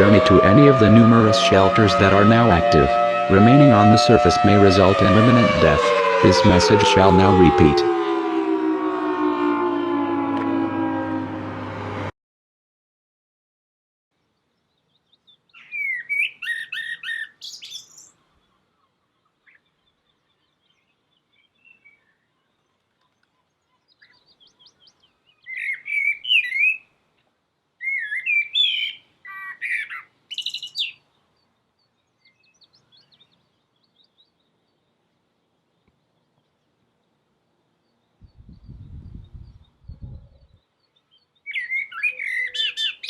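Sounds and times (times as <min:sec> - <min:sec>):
bird chirps and warbles: 0:14.2 - 0:27.0, 0:27.8 - 0:43.0.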